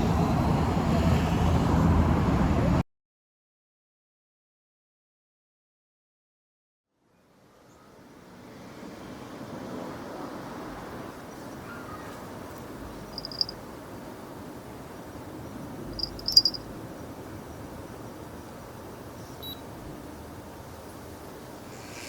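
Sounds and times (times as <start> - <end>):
high electronic beeps: 16.0 - 16.6.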